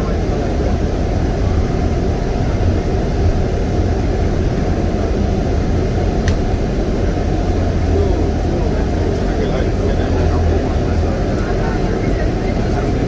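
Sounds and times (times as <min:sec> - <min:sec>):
jet cabin engine rumble: 0:00.0 - 0:13.0.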